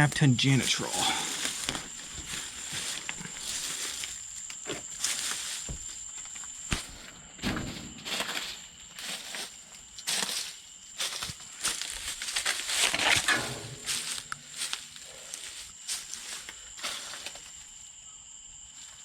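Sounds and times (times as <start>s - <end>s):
footsteps: 0.5s - 17.5s
rustling: 0.8s - 9.6s
high-pitched whine: 12.9s - 15.6s.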